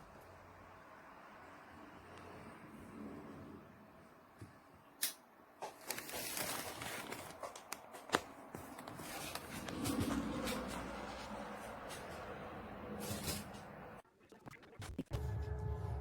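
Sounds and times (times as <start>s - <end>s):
rustling handling noise: 5.6s - 13.9s.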